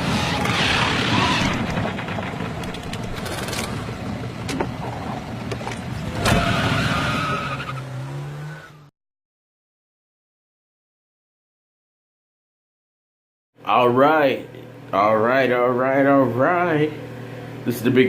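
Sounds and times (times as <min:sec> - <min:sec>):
car engine: 0:00.0 - 0:08.9.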